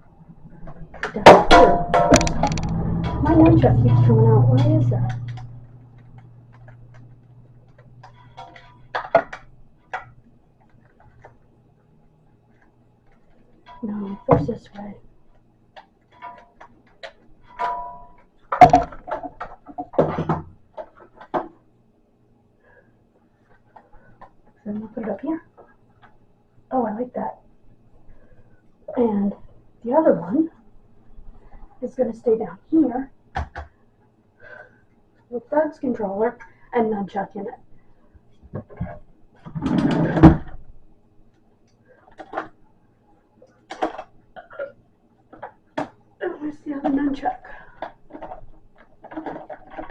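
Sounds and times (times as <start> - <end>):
plastic controllers clacking: 0.7 - 3.3, 43.5 - 44.1, 46.8 - 49.9.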